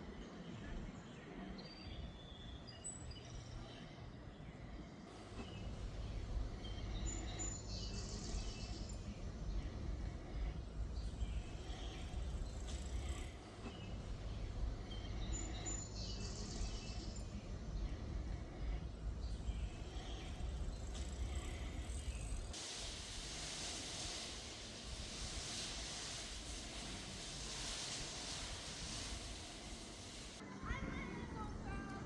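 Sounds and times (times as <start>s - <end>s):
small birds chirping: 0.0s - 30.4s
low rumble: 5.2s - 30.3s.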